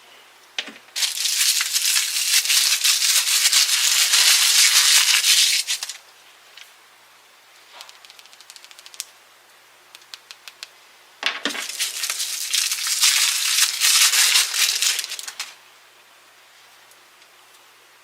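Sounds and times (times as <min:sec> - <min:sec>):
plastic wrapper crinkling: 0:01.0 - 0:06.0, 0:11.5 - 0:15.6.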